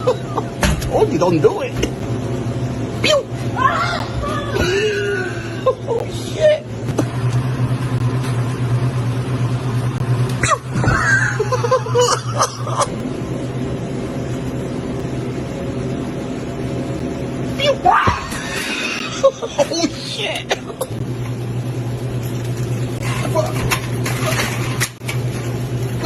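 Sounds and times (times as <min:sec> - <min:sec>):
refrigeration hum: 0:00.0 - 0:26.0.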